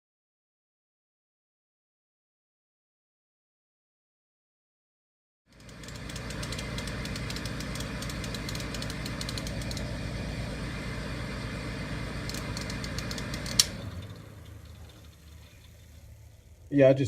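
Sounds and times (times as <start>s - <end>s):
faint ticking: 5.5s - 9.9s
sharp timer click: 5.5s - 9.9s, 12.2s - 13.8s
refrigerator humming: 5.5s - 17.0s.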